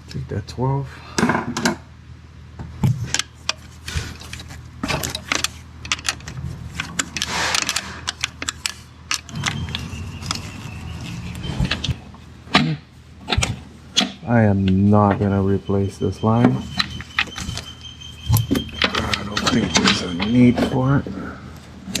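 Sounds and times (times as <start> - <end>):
steady low hum: 0.0 - 22.0
short scrape: 7.2 - 8.0.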